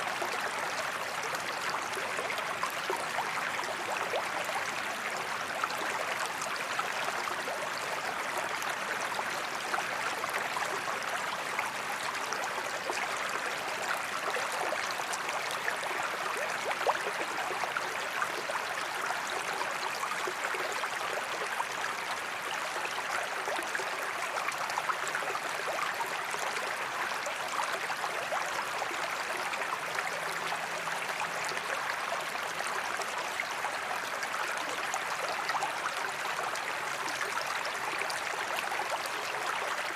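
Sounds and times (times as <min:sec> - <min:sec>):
creek babbling: 0:00.0 - 0:39.9.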